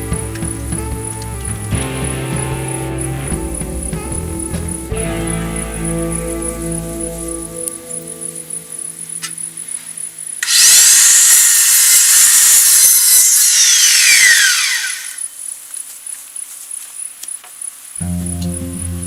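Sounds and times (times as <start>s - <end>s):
power saw cutting wood: 10.4s - 15.3s
saw blade spinning down: 10.4s - 15.3s.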